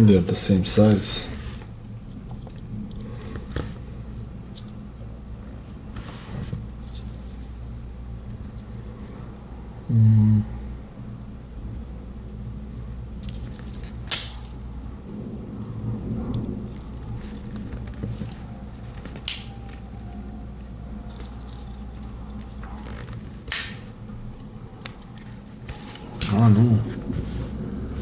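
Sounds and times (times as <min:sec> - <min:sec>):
low hum: 0:00.0 - 0:28.0.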